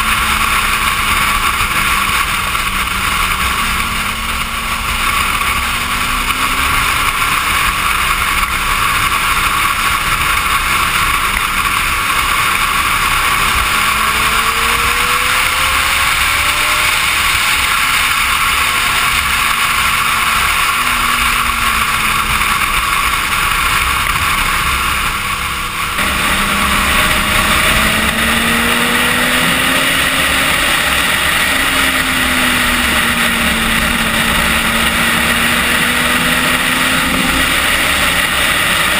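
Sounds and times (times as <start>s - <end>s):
motorcycle engine at speed: 0.0s - 38.9s.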